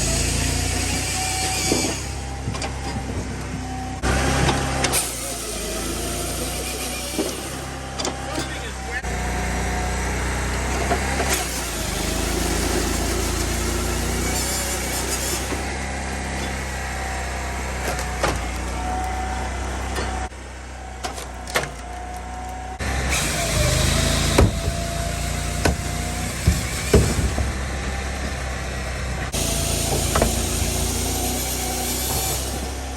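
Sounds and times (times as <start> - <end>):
firewood processor engine hum: 0.0 - 32.9
sharp knocks of wood: 24.2 - 25.0, 25.6 - 27.6.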